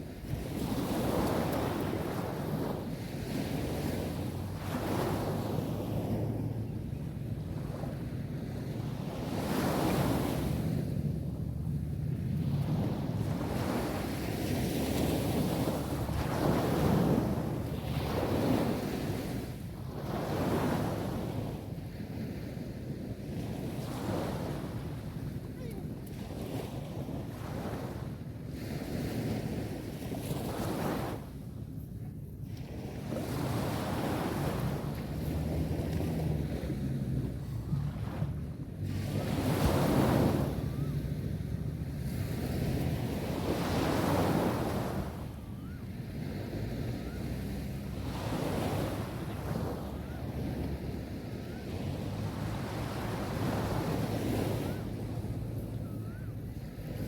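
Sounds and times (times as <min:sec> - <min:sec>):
sea waves rolling onto beach: 0:00.0 - 0:31.9, 0:32.6 - 0:57.0
wind rumble on microphone: 0:00.0 - 0:57.0
sea waves washing onto beach: 0:46.0 - 0:57.0.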